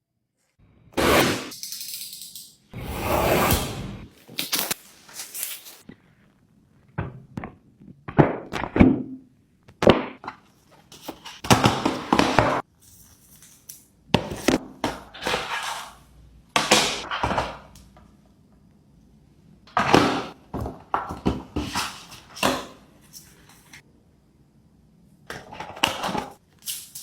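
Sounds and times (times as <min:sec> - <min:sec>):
packaging rustling and sliding: 0:02.8 - 0:05.9.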